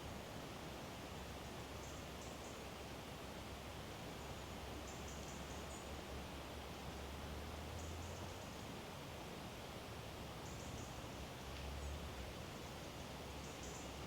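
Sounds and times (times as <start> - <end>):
faint steady hiss: 0.0 - 14.0.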